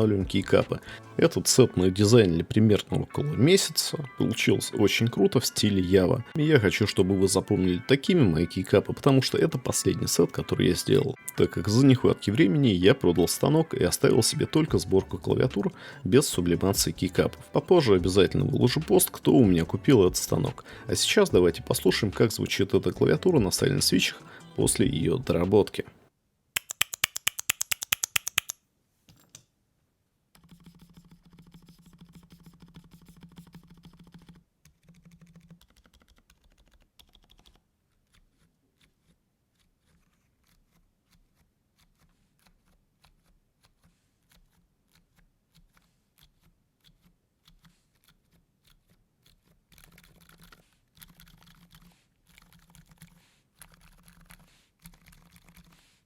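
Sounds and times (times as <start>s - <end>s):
loud evenly spaced clicks: 26.6s - 28.6s
soft muffled keyboard keystrokes: 30.4s - 39.2s.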